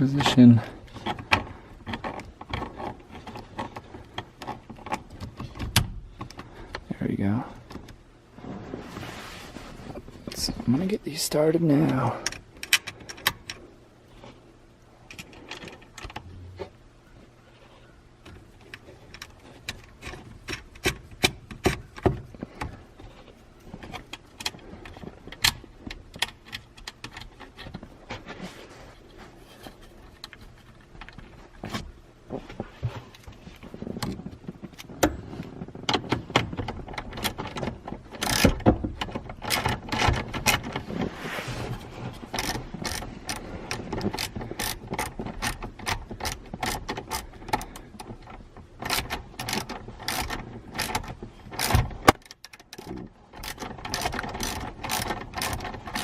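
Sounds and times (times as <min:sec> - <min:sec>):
socket ratchet clicking: 0:48.8 - 0:56.0.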